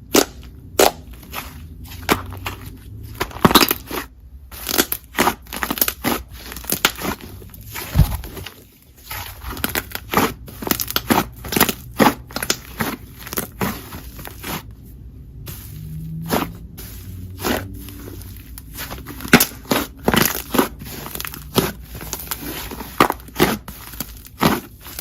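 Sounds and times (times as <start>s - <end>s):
slime crackling and popping: 3.2s - 8.5s, 9.1s - 14.6s, 17.4s - 25.0s.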